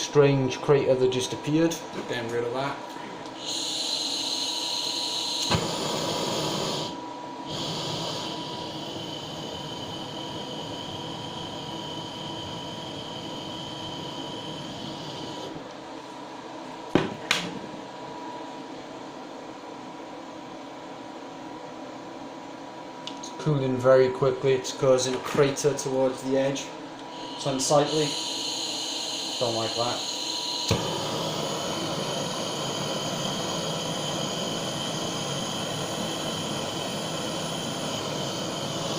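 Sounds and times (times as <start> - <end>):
blowtorch hissing: 3.4 - 15.6, 25.7 - 38.9.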